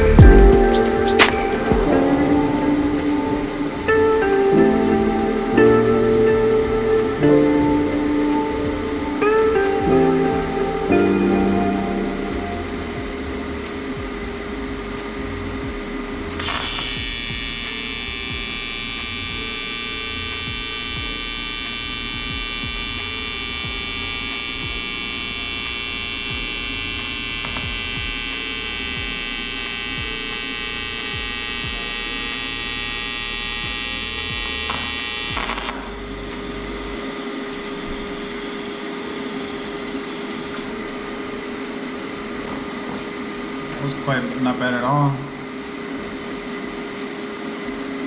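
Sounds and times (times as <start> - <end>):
welder hum: 0.0 - 43.7
welding arc buzz: 15.9 - 41.4.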